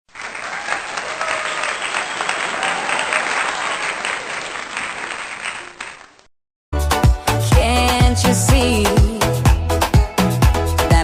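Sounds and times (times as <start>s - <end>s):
people clapping: 0.1s - 6.3s.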